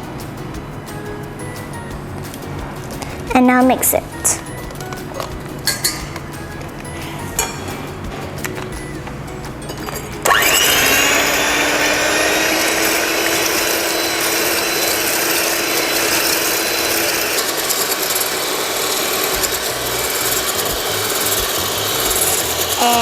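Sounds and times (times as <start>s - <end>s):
electric hand mixer whining: 9.8s - 23.0s.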